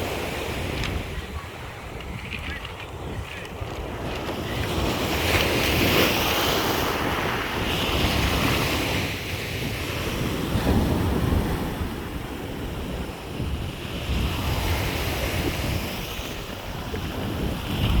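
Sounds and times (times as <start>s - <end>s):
waves washing onto shore: 0.0s - 18.0s
wind on microphone: 0.0s - 18.0s.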